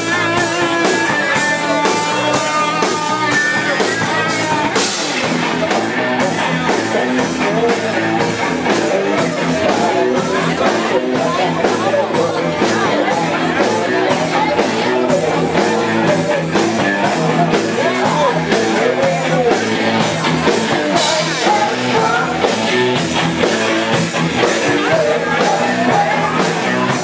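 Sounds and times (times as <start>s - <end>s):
drum beat: 0.0s - 27.0s
electric guitar: 0.0s - 27.0s
live rock band: 0.0s - 27.0s
person singing: 0.0s - 27.0s.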